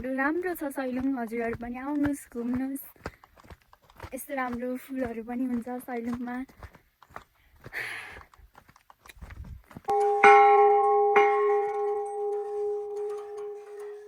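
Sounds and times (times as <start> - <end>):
footsteps: 0.0 - 14.0
metal bell ringing: 9.9 - 14.0.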